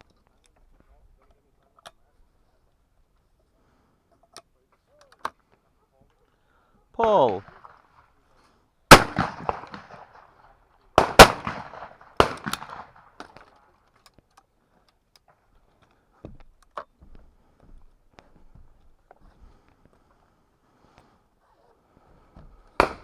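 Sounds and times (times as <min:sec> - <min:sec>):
shotgun shots with echo: 0:08.9 - 0:10.3, 0:11.0 - 0:13.2, 0:22.8 - 0:23.0.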